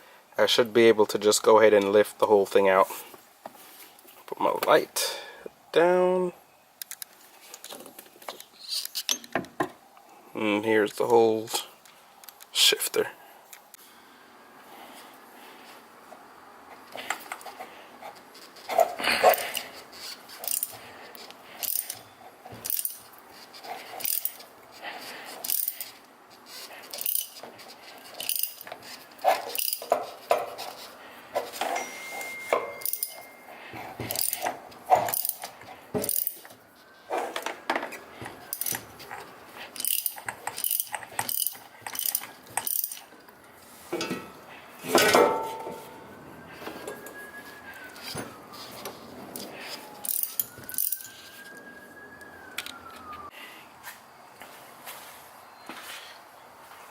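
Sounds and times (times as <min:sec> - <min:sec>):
ratchet wrench clicking: 0:20.4 - 0:20.7, 0:21.6 - 0:22.0, 0:22.6 - 0:23.0, 0:24.0 - 0:24.4, 0:25.4 - 0:25.9, 0:26.9 - 0:27.4, 0:28.2 - 0:28.7, 0:29.5 - 0:29.9, 0:34.1 - 0:34.5, 0:35.1 - 0:36.4, 0:38.5 - 0:38.8, 0:39.8 - 0:43.0
metal parts clinking: 0:20.4 - 0:20.8, 0:21.6 - 0:22.0, 0:22.6 - 0:23.1, 0:24.0 - 0:24.5, 0:25.4 - 0:26.0, 0:26.9 - 0:27.4, 0:28.0 - 0:33.4, 0:34.0 - 0:36.5, 0:38.5 - 0:43.1, 0:49.4 - 0:51.2.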